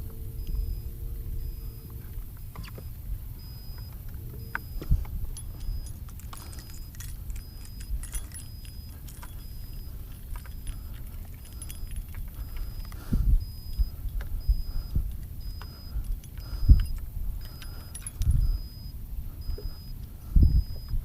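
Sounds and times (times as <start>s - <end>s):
low rumble: 0.0s - 21.0s
small metal pieces jingling: 4.5s - 13.0s, 13.7s - 18.4s
faint short high beep: 11.4s - 21.0s.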